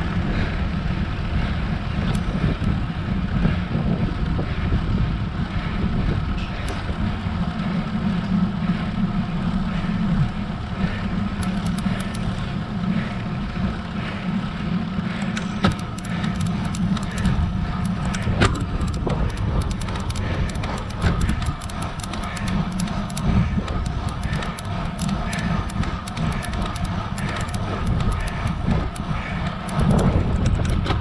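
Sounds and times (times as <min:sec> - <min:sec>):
bike tyres on tarmac: 0:00.0 - 0:31.0
wind rumble on microphone: 0:00.0 - 0:31.0
light clicks: 0:11.4 - 0:12.3.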